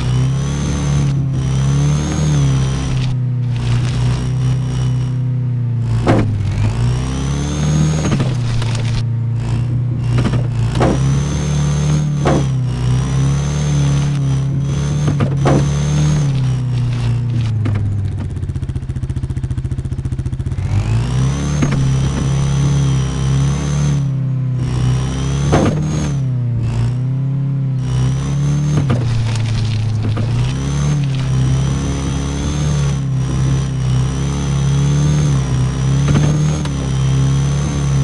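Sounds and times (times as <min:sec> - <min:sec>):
vehicle engine running: 0:00.0 - 0:38.0.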